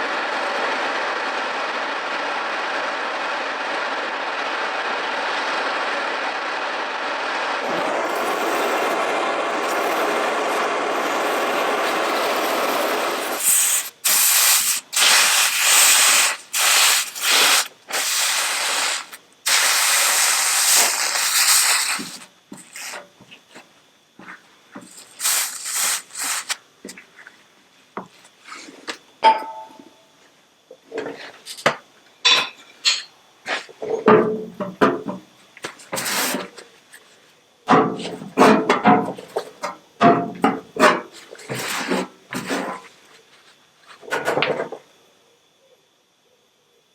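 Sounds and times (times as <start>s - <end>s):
blowlamp flame roaring: 0.0s - 23.0s, 24.8s - 26.6s
short hissing sprays: 7.6s - 23.0s, 24.9s - 26.6s, 36.0s - 36.5s.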